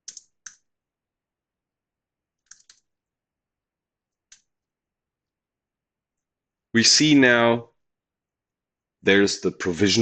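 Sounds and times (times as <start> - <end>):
keyboard keystrokes: 0.0 - 0.6, 2.4 - 2.9.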